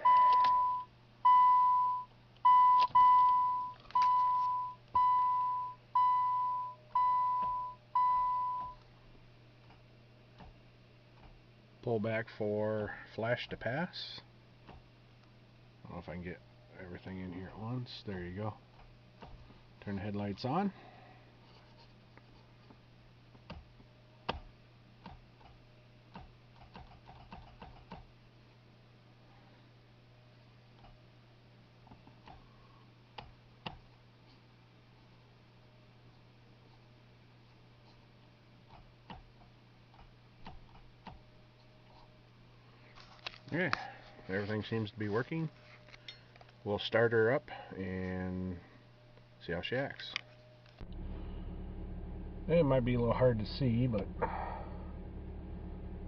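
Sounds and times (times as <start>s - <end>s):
dashboard warning chime beeping: 0.0s - 8.8s.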